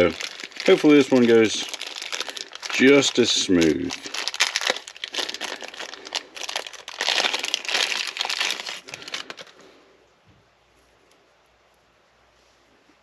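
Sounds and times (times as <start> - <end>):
packaging crinkling: 0.0 - 9.7.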